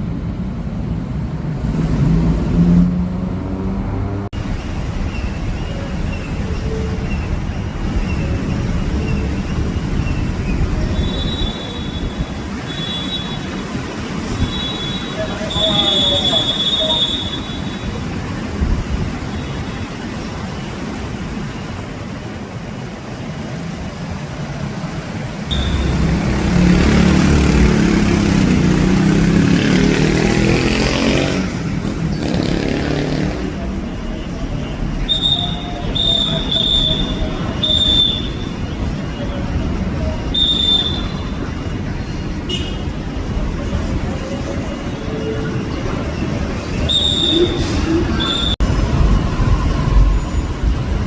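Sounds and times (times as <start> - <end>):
low rumble of road traffic: 0.0 - 51.0
loud close vehicle engine: 1.6 - 21.5, 23.4 - 51.0
high squeal: 5.0 - 13.6, 14.3 - 18.0, 25.5 - 26.3, 34.0 - 39.4, 44.5 - 51.0.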